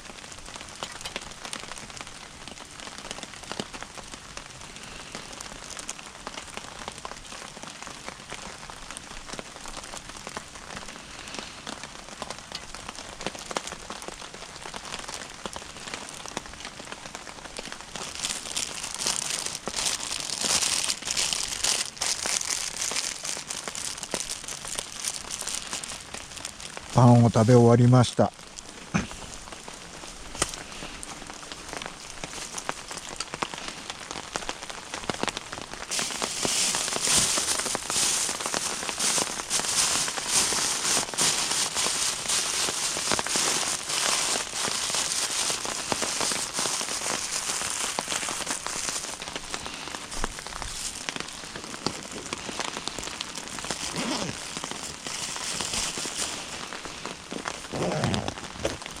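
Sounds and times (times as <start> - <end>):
fire crackling and popping: 0.0 - 59.0
fire hissing: 21.8 - 58.9.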